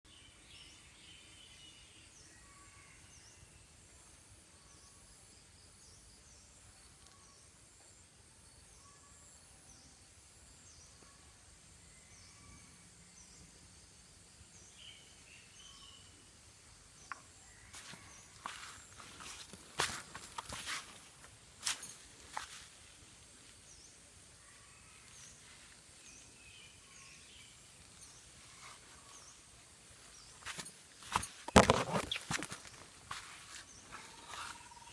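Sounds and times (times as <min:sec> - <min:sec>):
insects: 0:00.1 - 0:34.9
birds calling: 0:30.1 - 0:34.9.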